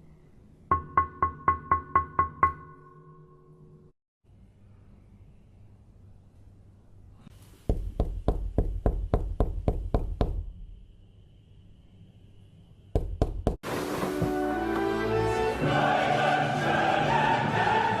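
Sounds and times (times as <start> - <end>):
loud choral music: 14.1 - 18.0.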